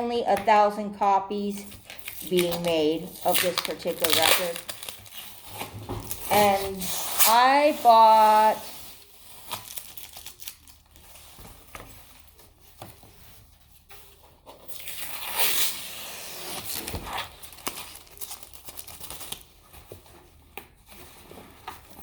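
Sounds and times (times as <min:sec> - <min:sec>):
packaging tearing: 0:01.5 - 0:12.2, 0:14.6 - 0:19.6
packaging crinkling: 0:01.5 - 0:22.0.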